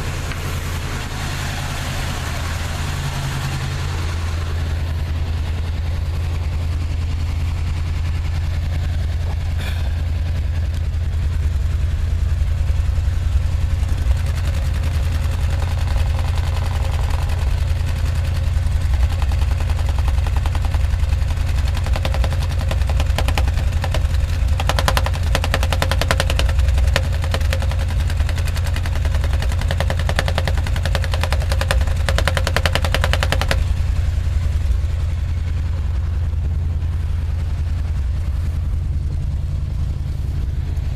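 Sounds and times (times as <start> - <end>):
engine exhaust drone: 0.0 - 40.9
sharp misfire ticks: 13.7 - 34.2.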